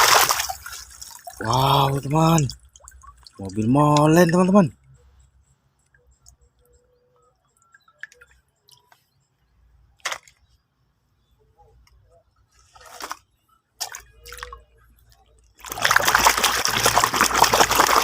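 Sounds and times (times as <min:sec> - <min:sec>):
water swishing: 0:00.0 - 0:04.6, 0:15.6 - 0:18.0.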